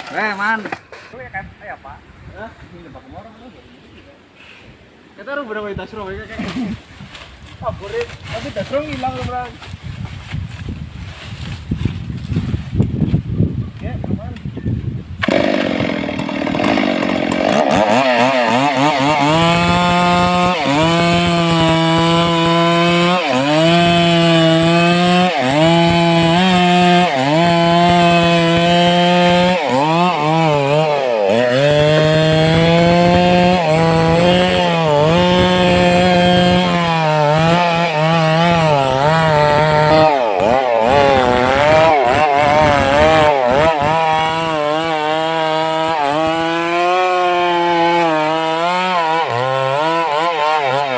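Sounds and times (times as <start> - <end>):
chainsaw cutting wood: 15.2 - 50.9.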